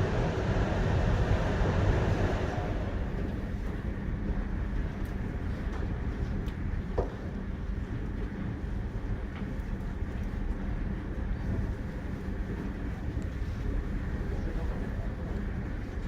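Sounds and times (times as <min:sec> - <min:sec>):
train wheels rumbling on rail: 0:00.0 - 0:16.0.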